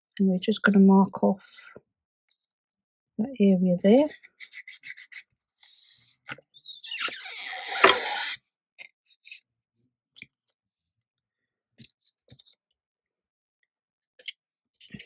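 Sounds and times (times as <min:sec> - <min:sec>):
tape tearing squeal: 0:06.6 - 0:08.4.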